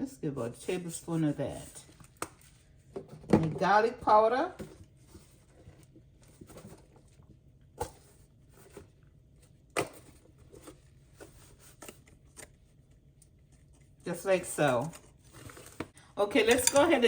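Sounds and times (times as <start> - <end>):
kitchen clicks and taps: 16.4 - 17.0.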